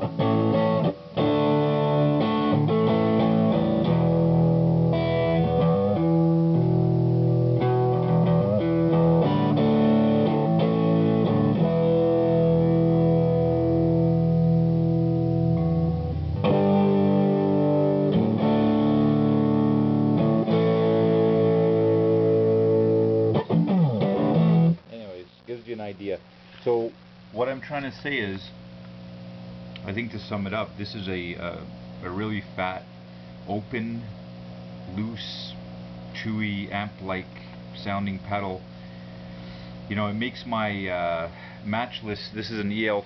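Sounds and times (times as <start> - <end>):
overdriven electric guitar: 0.0 - 25.2.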